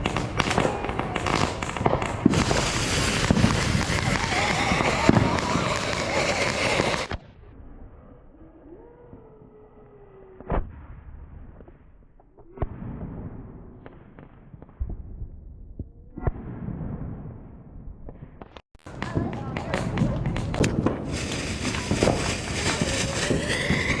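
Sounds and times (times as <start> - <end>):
fireworks bangs: 0.0 - 7.2, 18.0 - 24.0
fireworks crackling and popping: 0.0 - 7.3, 18.2 - 24.0.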